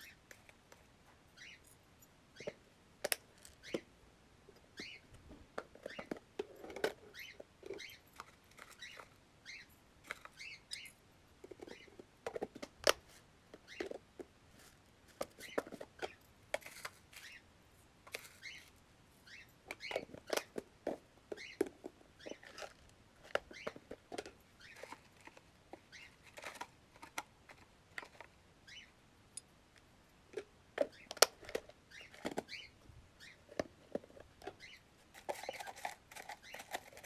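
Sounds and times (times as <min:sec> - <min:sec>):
seed pattering in containers: 0:33.4 - 0:37.0.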